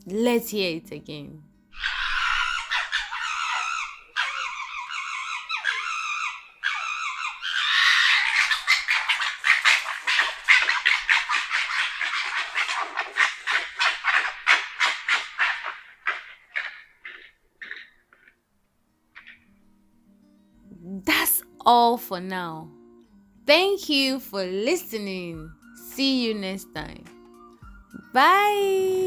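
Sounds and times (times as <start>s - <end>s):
fox calling: 1.7s - 18.4s.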